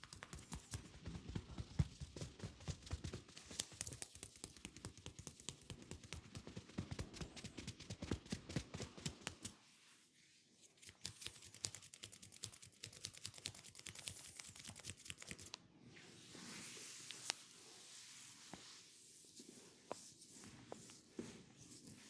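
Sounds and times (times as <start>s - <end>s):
hands crackling and tapping on skin: 0.0s - 9.6s, 10.8s - 15.6s
smooth rubbing hiss: 16.1s - 22.0s.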